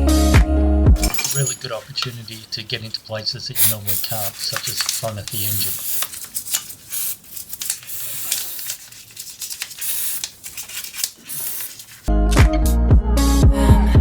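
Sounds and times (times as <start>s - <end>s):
music with a steady beat: 0.0s - 1.0s, 12.1s - 14.0s
hissing and rubbing strokes: 3.6s - 12.1s.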